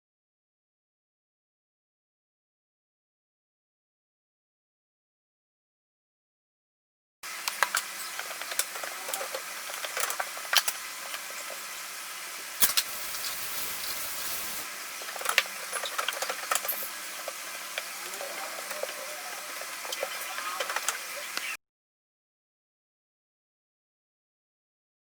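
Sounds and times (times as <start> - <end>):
steady hiss: 7.3 - 21.6
rustling or rubbing: 12.7 - 14.7.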